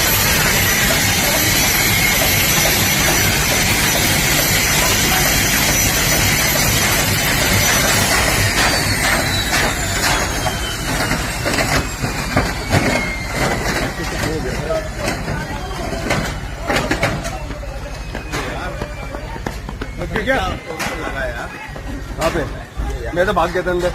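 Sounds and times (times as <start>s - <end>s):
helicopter turbine and rotor: 0.0s - 16.6s.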